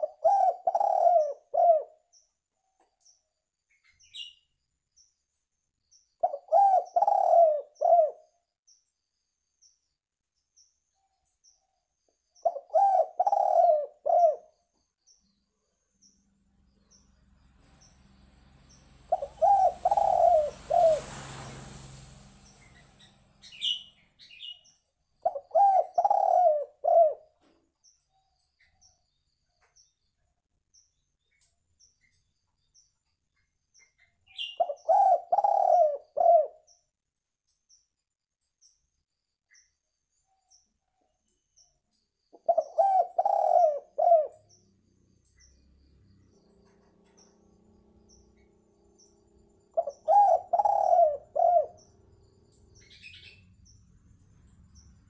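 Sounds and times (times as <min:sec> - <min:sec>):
dove cooing: 0:00.0 - 0:02.0, 0:06.2 - 0:08.3, 0:12.4 - 0:14.6, 0:19.0 - 0:21.2, 0:25.2 - 0:27.5, 0:34.4 - 0:36.6, 0:42.4 - 0:44.4, 0:49.8 - 0:51.9
rushing noise with low hum: 0:17.4 - 0:24.1.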